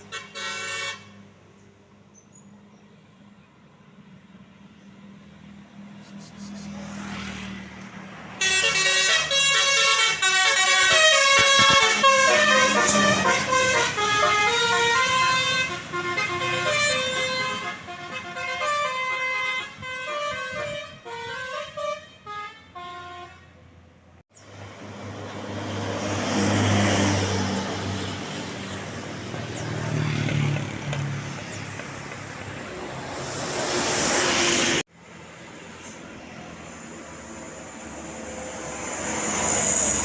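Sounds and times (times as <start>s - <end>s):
bus horn melody: 0.0s - 1.2s, 8.4s - 23.6s
large vehicle passing: 5.5s - 9.4s, 10.1s - 17.9s, 24.5s - 40.0s.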